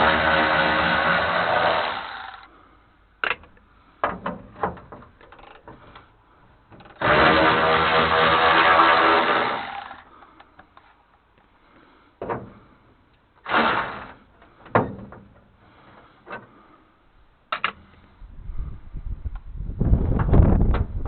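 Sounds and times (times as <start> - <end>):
metal clunks and knocks: 3.2 - 6.1, 12.2 - 12.7, 14.4 - 16.5.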